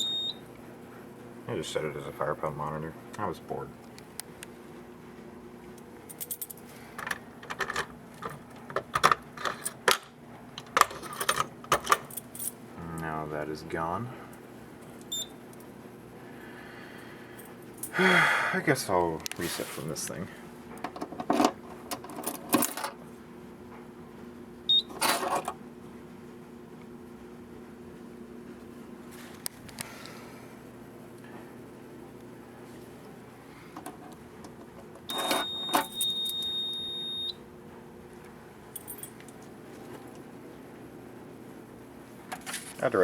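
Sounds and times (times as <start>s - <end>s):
short high-pitched beep: 0.0s - 0.4s, 35.1s - 37.4s
low steady hum: 0.0s - 43.0s.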